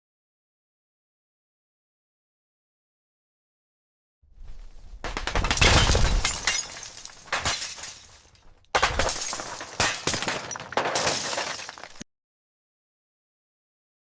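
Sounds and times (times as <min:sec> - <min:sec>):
debris crashing and breaking: 0:04.6 - 0:12.0.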